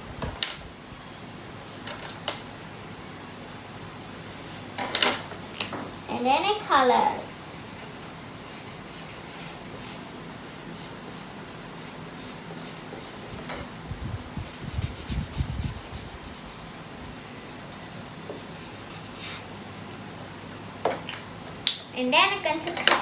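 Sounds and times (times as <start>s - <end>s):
scratchy colouring strokes on paper: 14.4s - 19.5s.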